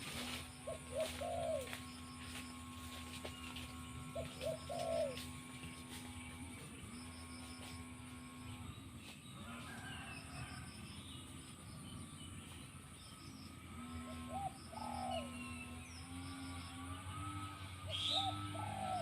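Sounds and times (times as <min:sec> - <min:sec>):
dove cooing: 0:00.0 - 0:02.0, 0:03.4 - 0:05.8, 0:13.7 - 0:19.0
small birds chirping: 0:00.1 - 0:09.4, 0:11.0 - 0:19.0.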